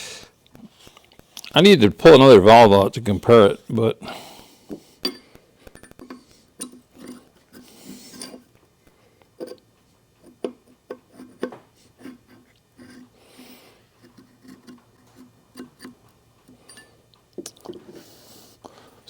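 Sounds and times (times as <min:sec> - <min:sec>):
metallic clinks of engine parts: 0:16.6 - 0:17.0.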